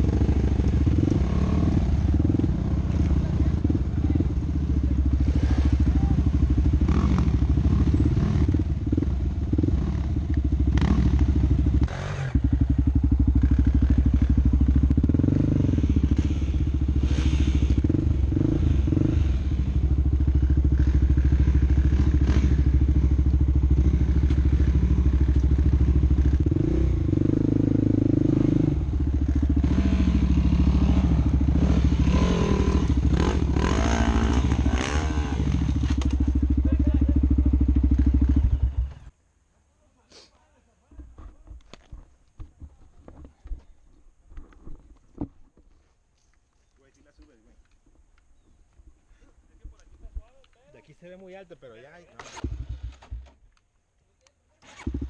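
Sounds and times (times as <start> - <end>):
off-road vehicle engine revving: 0.0 - 39.1, 54.6 - 55.0.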